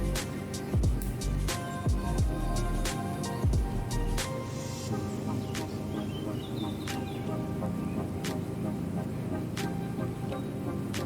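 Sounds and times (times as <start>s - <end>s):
background music with drums: 0.0s - 4.9s.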